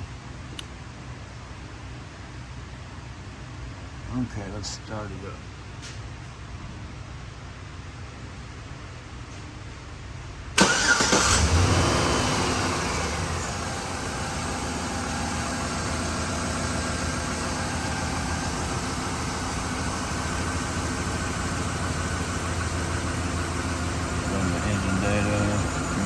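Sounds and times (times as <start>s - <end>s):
engine idling and misfiring: 10.5s - 26.0s
starter cranking engine: 10.6s - 13.9s
engine revving: 10.6s - 26.0s.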